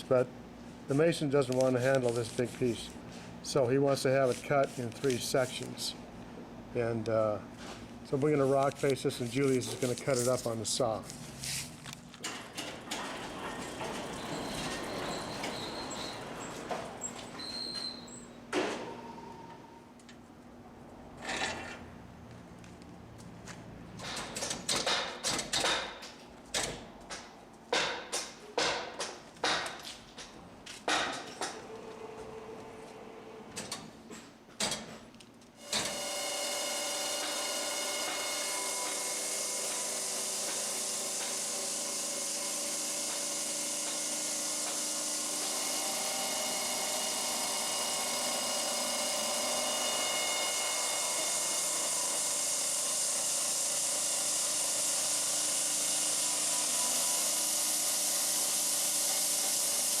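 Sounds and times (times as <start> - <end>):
sharp knocks: 27.7 - 29.8
stone-cutting saw cutting stone: 35.6 - 60.0.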